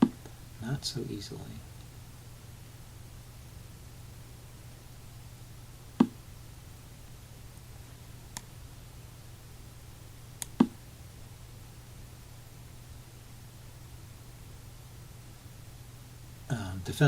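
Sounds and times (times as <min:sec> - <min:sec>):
steady low hum: 0:00.0 - 0:17.0
faint sharp clicks: 0:10.4 - 0:10.7.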